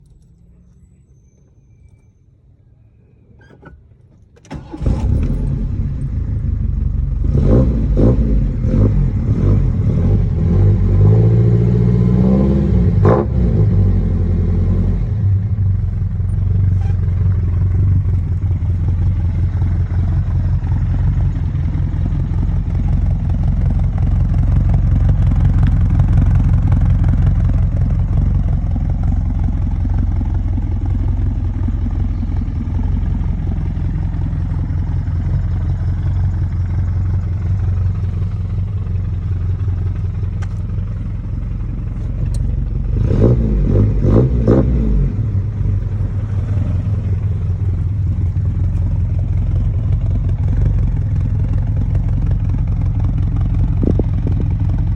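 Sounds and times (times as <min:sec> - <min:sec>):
car engine running: 0:04.4 - 0:54.9
engine revving: 0:04.5 - 0:15.9, 0:41.9 - 0:51.0.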